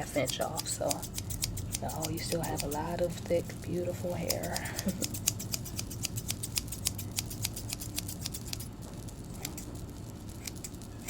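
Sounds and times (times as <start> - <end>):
scissors snipping: 0.0 - 2.8, 4.2 - 8.7, 9.4 - 9.7, 10.4 - 10.7.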